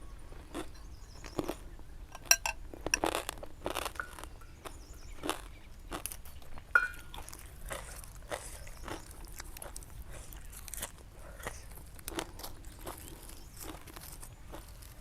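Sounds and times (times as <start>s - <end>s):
crunchy chewing of food: 0.0s - 15.0s
utensil clinking on bowl: 2.1s - 3.0s, 6.8s - 7.2s.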